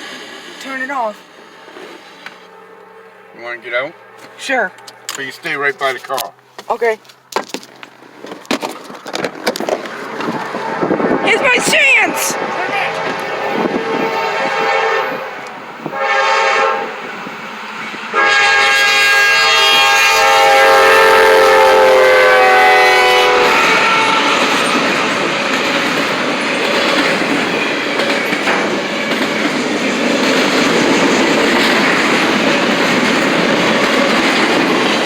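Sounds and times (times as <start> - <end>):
train cars rumbling and clacking: 0.0 - 35.0
locomotive horn blasts: 10.6 - 17.1, 18.1 - 24.8.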